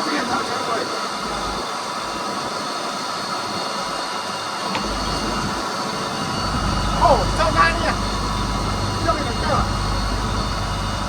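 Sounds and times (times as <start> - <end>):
wind: 0.0 - 11.0
boat engine running: 1.2 - 2.2, 4.7 - 11.0
water noise: 3.8 - 11.0
low rumble: 4.8 - 11.0.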